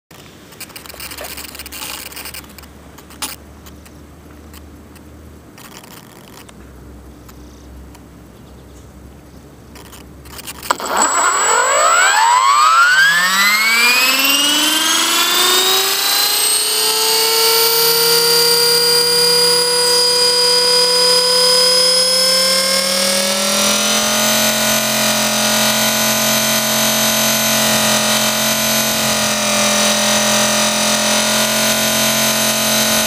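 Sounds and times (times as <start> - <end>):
click: 9.8 - 14.3
helicopter motor whine rising: 9.8 - 33.0.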